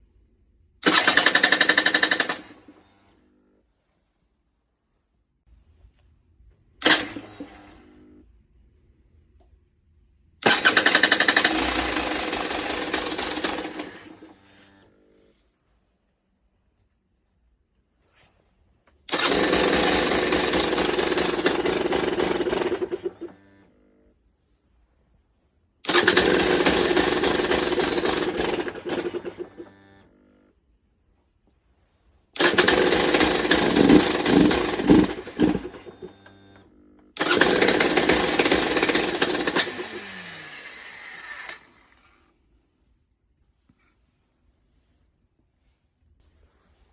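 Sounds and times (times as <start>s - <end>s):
dirt bike engine cranking: 0.8s - 2.8s, 6.8s - 7.6s, 10.4s - 14.8s, 19.1s - 23.6s, 25.9s - 30.0s, 32.4s - 41.8s
dirt bike engine running rough: 32.4s - 36.6s.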